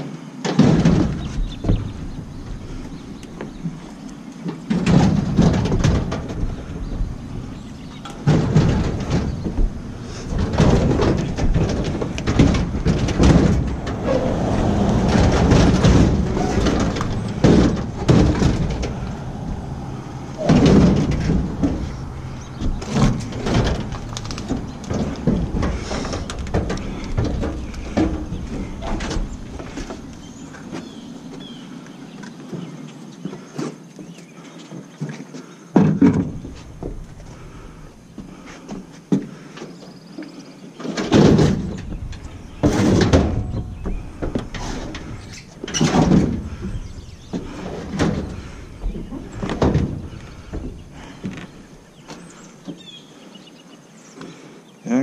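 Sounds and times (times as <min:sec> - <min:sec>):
sheet metal knocks and bangs: 0:00.5 - 0:02.3, 0:04.7 - 0:30.1, 0:41.0 - 0:51.4
heavy thump: 0:08.2 - 0:30.1
low rumble: 0:08.6 - 0:30.4.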